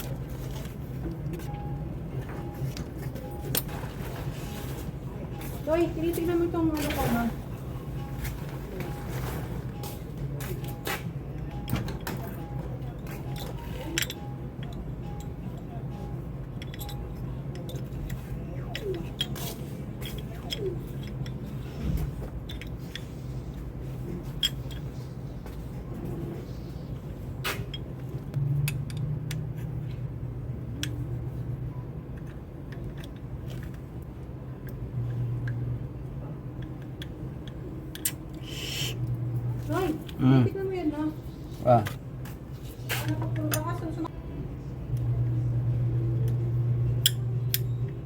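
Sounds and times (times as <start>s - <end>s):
steady low hum: 0.0s - 48.0s
metal tools clicking: 16.6s - 21.5s.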